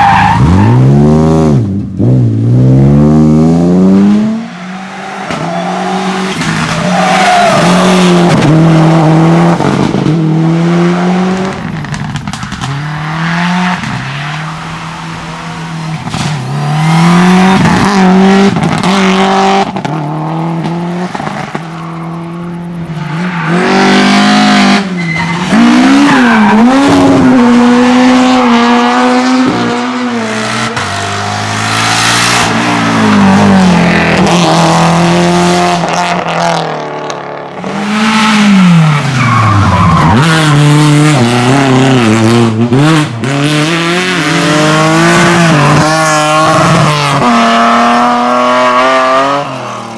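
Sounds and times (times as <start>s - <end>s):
tyres skidding and squealing: 0.0s - 1.6s, 4.1s - 9.5s, 11.2s - 29.4s, 38.0s - 42.0s, 44.2s - 49.9s
rally car engine revving: 0.0s - 49.9s.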